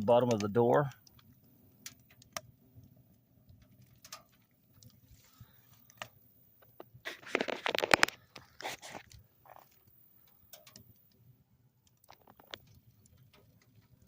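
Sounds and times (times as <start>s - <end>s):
wood fire crackling and popping: 0.0s - 14.0s.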